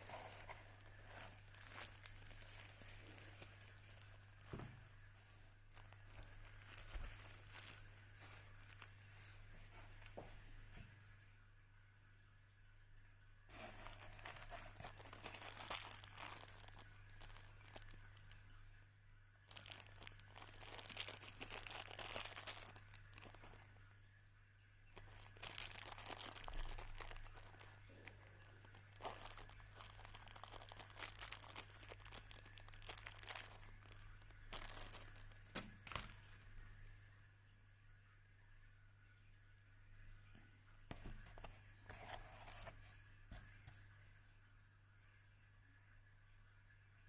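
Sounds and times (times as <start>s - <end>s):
packaging crinkling: 0.0s - 4.8s, 5.7s - 9.1s, 13.5s - 18.6s, 19.4s - 23.8s, 24.9s - 36.4s.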